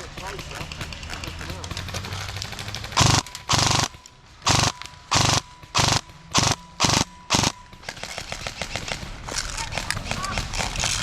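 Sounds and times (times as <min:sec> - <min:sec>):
airsoft rifle full-auto bursts: 0:01.8 - 0:09.0.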